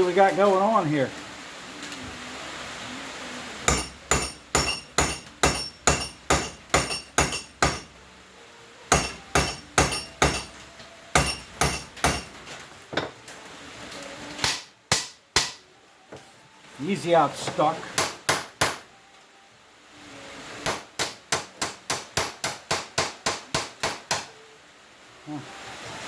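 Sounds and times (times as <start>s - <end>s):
hammer striking steel: 3.7s - 8.0s, 8.9s - 12.4s, 14.4s - 15.6s, 18.0s - 18.8s, 20.6s - 24.3s.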